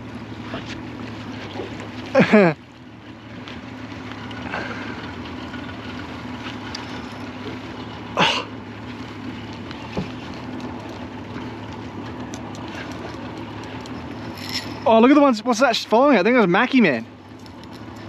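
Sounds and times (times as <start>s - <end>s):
boat motor running: 0.0s - 18.0s.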